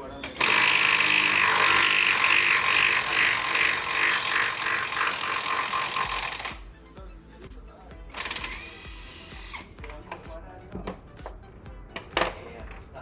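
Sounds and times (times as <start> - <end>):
loud machine pulsing: 0.4 - 6.6.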